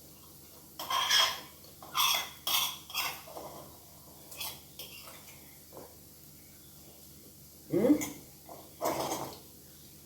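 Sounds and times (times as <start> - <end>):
metal utensil clinking on cookware: 0.8 - 3.6.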